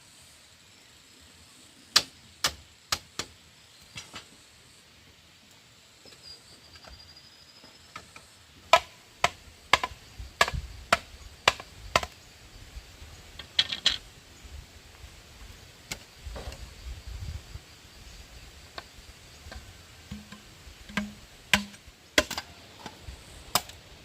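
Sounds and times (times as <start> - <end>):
sharp irregular strikes: 20.1 - 22.3.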